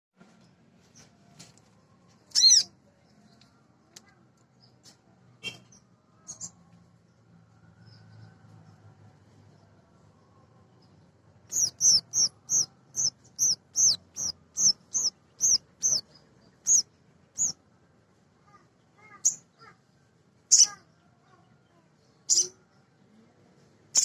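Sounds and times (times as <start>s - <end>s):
faint bird chirps: 2.2s - 3.5s, 10.2s - 17.6s, 20.5s - 22.8s.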